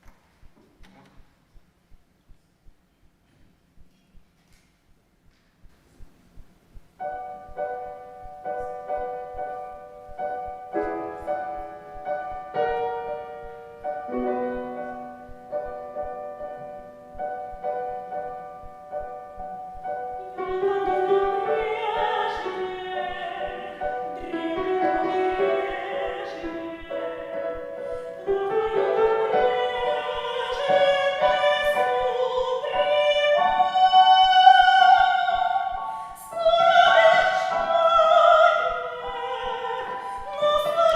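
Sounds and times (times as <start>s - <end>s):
piano playing: 7.0s - 40.9s
woman singing operatically: 20.2s - 40.9s.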